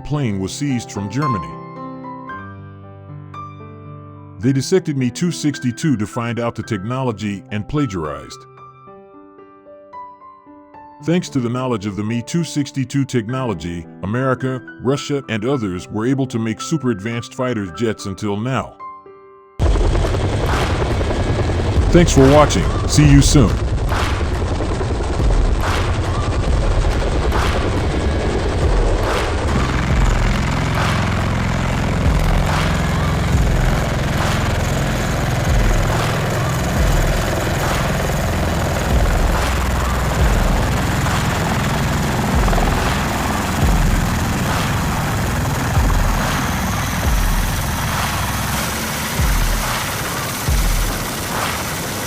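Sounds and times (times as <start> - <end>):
aircraft engine roar: 19.6 - 52.0.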